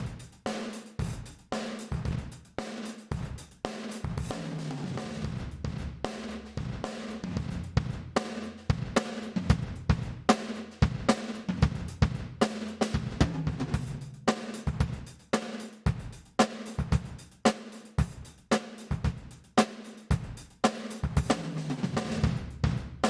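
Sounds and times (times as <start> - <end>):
compressed drum kit playing: 3.1 - 17.4, 20.1 - 23.0.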